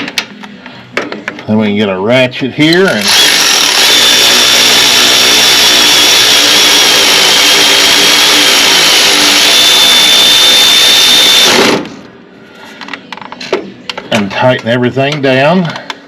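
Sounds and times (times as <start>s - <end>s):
power ratchet whining: 3.0s - 12.0s.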